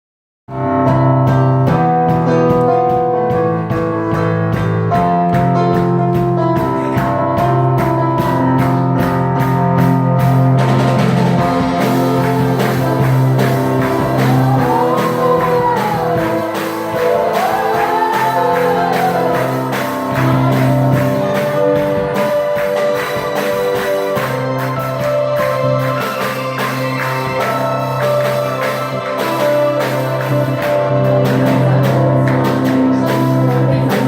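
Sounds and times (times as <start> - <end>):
music with steady beat: 0.5 - 34.0
person singing: 11.3 - 34.0.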